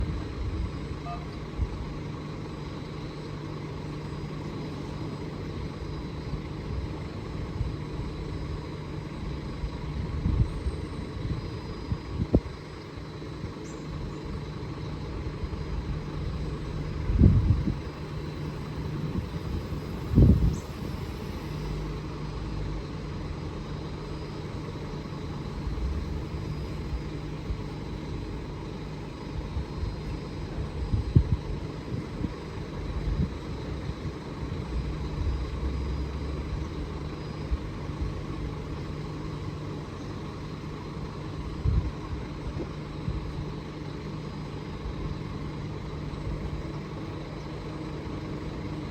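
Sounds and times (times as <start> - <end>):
electric train hum and rumble: 0.0 - 48.9.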